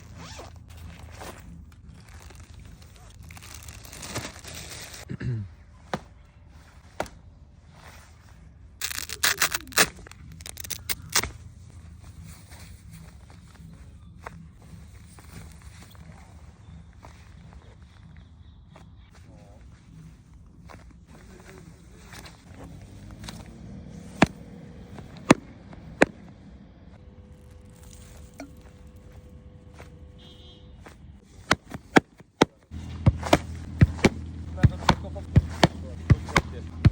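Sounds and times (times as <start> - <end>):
sharp packaging crackles: 1.0 - 5.1, 8.8 - 11.3
packaging handling scrapes and clicks: 8.8 - 11.4.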